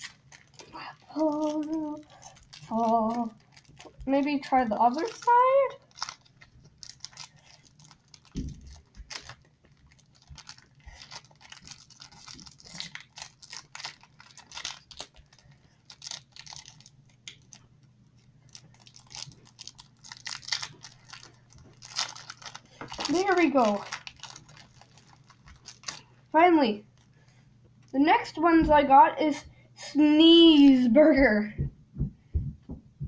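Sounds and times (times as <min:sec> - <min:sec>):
plastic packaging crinkling: 0:00.0 - 0:27.1
low thump: 0:31.6 - 0:33.0.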